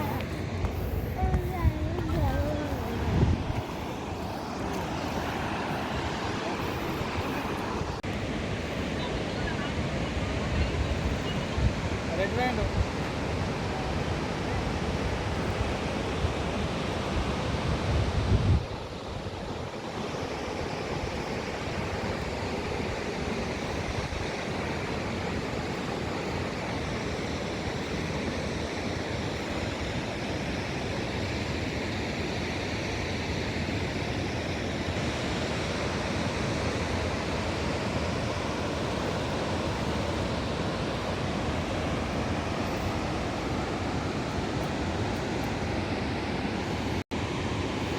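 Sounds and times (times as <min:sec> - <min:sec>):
wind buffeting microphone: 0:00.0 - 0:13.9, 0:14.6 - 0:19.6
waterfall roaring: 0:00.0 - 0:17.5.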